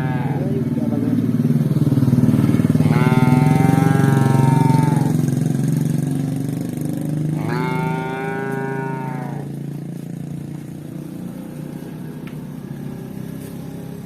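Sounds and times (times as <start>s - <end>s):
cow mooing: 0.0s - 0.7s, 2.8s - 5.4s, 7.3s - 9.6s
motorcycle engine running: 0.0s - 14.0s.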